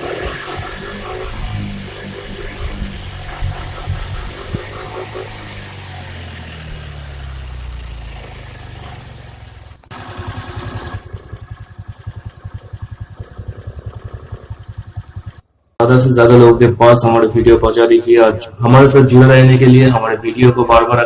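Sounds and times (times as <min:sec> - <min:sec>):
scooter engine revs falling: 0:00.0 - 0:15.5
scooter engine idling putter: 0:00.0 - 0:15.8.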